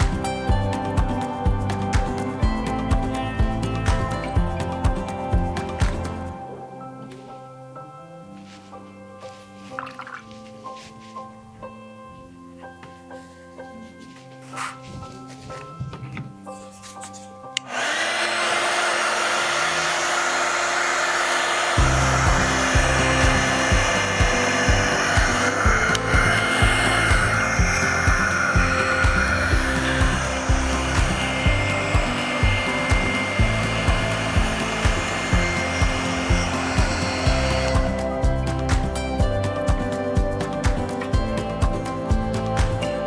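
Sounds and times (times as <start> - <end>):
hair dryer whirring: 0.0 - 6.2, 17.6 - 43.0
background music with steady beat: 0.0 - 43.0.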